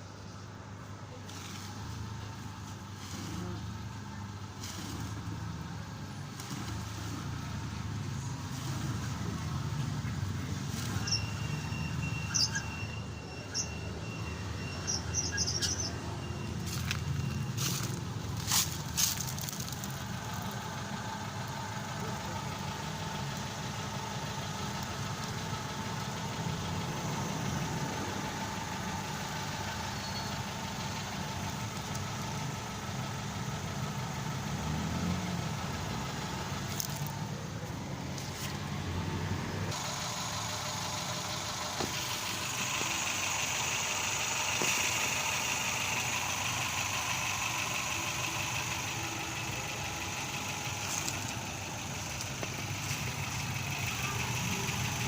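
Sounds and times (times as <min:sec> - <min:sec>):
car engine idling: 0:00.0 - 0:55.0.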